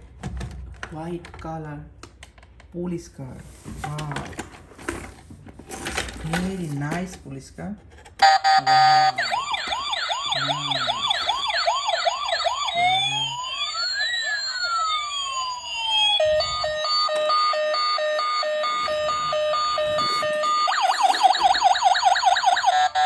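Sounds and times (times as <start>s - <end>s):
toy police siren: 8.2s - 23.0s.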